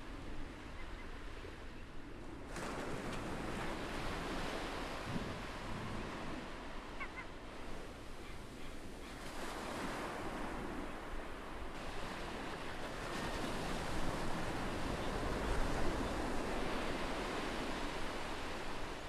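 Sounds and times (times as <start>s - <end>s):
ocean surf washing onto beach: 2.4s - 8.2s, 8.9s - 19.0s
faint seagull call: 6.9s - 7.4s, 8.2s - 9.8s.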